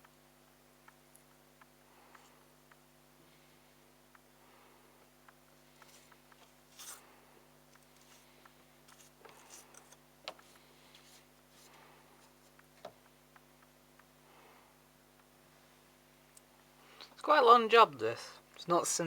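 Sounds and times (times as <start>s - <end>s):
toothbrush scratching: 5.8s - 7.0s, 8.9s - 10.0s.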